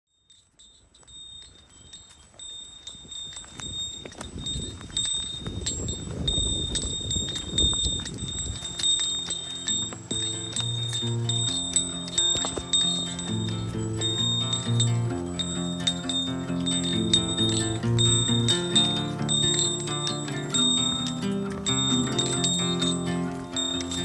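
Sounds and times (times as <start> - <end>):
chime-like high tones: 0.2 - 24.0
ticking clock-like beat: 5.4 - 24.0
bass notes: 6.4 - 24.0.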